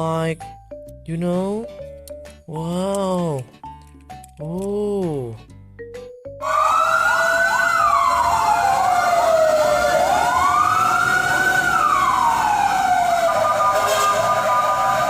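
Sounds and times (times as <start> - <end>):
fire engine siren wailing: 6.4 - 15.0.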